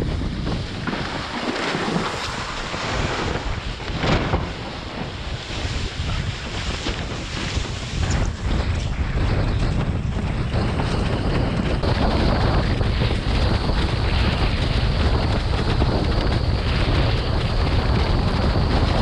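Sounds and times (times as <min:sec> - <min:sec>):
water rushing and splashing: 0:00.0 - 0:07.9
strong wind on microphone: 0:00.0 - 0:19.0.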